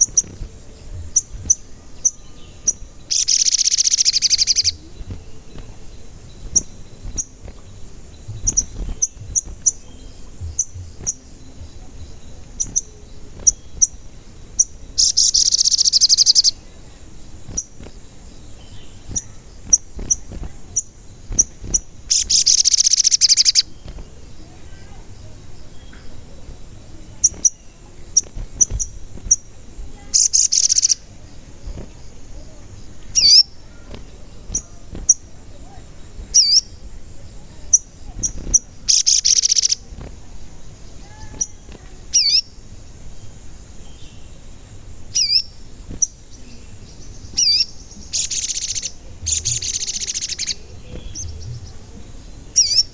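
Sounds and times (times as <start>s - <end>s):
bird chirping: 0.0s - 52.9s
bird chattering call: 1.1s - 5.0s, 14.6s - 16.6s, 21.4s - 23.8s, 37.7s - 39.9s, 47.4s - 52.0s, 52.6s - 52.9s.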